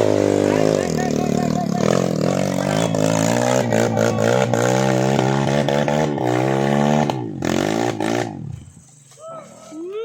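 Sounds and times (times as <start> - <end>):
vehicle engine revving hard: 0.0 - 8.4.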